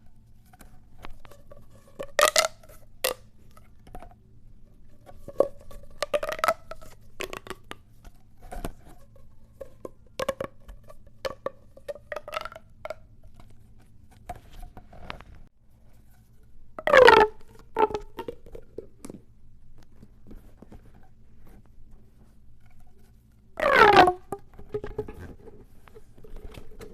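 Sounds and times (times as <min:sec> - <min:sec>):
plastic tube stretching ratchet: 0:00.5 - 0:04.1, 0:05.0 - 0:07.8, 0:08.4 - 0:13.6, 0:16.8 - 0:19.2, 0:23.6 - 0:26.9
plastic tube toy clicks and pops: 0:02.0 - 0:03.2, 0:05.3 - 0:07.8, 0:11.2 - 0:13.0, 0:16.8 - 0:19.2, 0:23.6 - 0:25.2.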